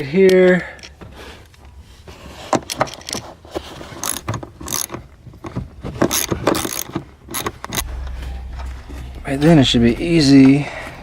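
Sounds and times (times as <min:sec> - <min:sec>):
ratchet wrench clicking: 0:04.0 - 0:05.0.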